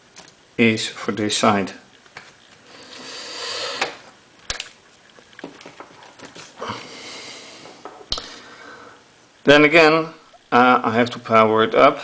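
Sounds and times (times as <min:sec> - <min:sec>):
sharp plastic clicks: 0:04.4 - 0:04.8.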